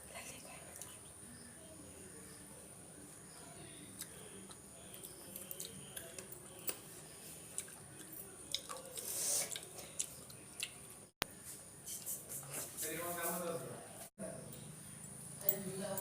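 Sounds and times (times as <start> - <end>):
wet chewing and mouth smacking: 4.0 - 10.9
wet slurp: 8.6 - 10.1.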